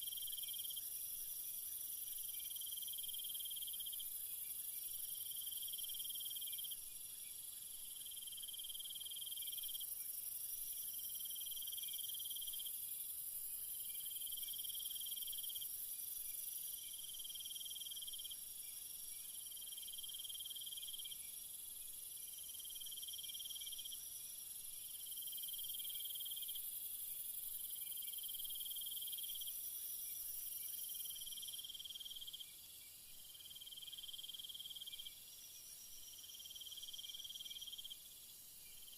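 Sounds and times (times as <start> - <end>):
high insect hiss: 0.0 - 38.9
insects trilling: 24.8 - 38.9.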